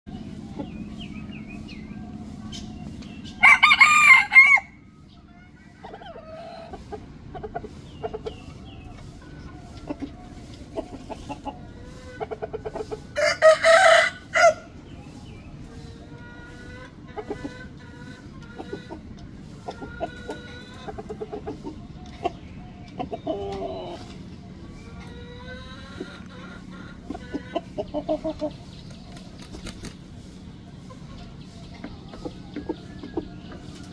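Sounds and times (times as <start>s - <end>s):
chicken clucks and soft calls: 0.1s - 33.9s
steady low hum: 0.1s - 33.9s
rooster crowing: 3.4s - 4.8s, 13.2s - 14.7s.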